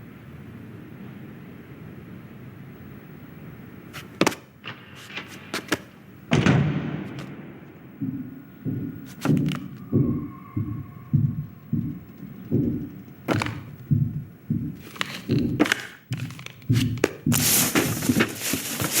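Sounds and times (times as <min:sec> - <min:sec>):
soft low thumps: 0:06.3 - 0:18.4.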